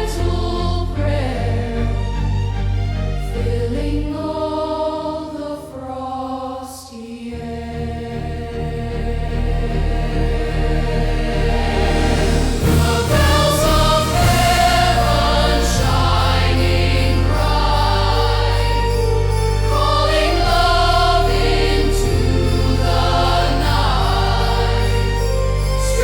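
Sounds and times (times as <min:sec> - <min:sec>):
choir singing sustained chords: 0:00.0 - 0:26.0
deep held bass notes: 0:07.8 - 0:26.0.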